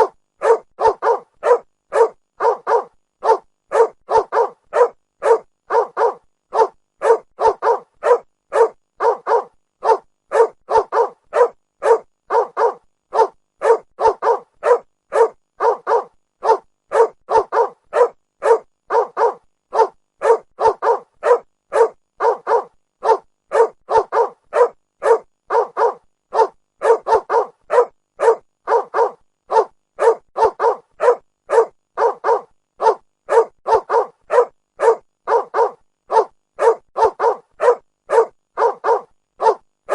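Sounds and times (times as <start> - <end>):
dog barking: 0.0 - 39.9.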